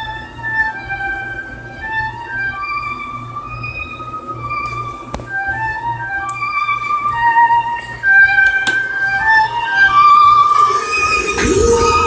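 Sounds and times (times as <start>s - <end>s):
funk song through speakers: 10.5s - 12.0s.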